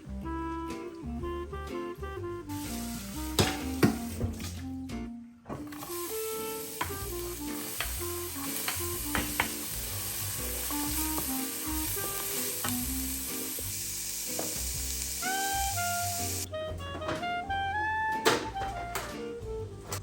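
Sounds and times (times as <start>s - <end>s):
food sizzling in frying pan: 2.5s - 4.3s, 5.7s - 16.5s
utensil clicking against pan: 6.7s - 9.8s.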